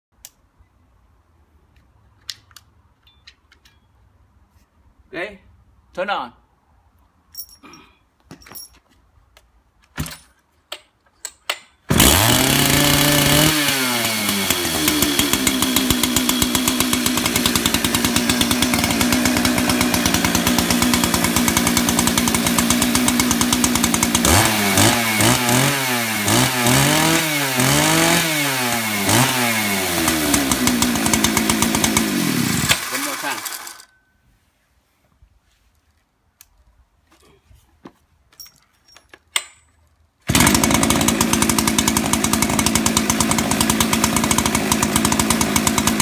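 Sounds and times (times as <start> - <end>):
chainsaw engine revving: 11.9 - 33.9, 40.3 - 46.0.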